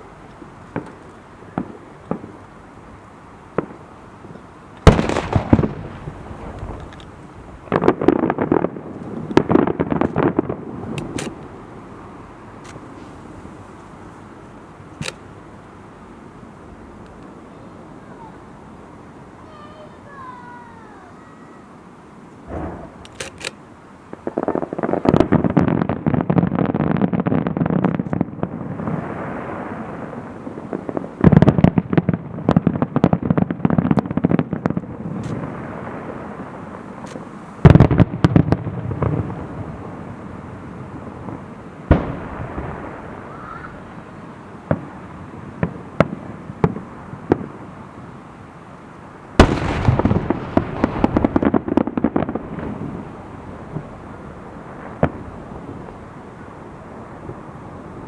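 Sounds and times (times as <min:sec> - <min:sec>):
fireworks bangs: 0:00.0 - 0:58.0
fireworks crackling: 0:00.0 - 0:58.0
fireworks pops: 0:00.3 - 0:02.5, 0:03.6 - 0:11.6, 0:12.6 - 0:15.3, 0:22.3 - 0:29.4, 0:30.3 - 0:39.5, 0:44.6 - 0:47.6, 0:49.4 - 0:53.0.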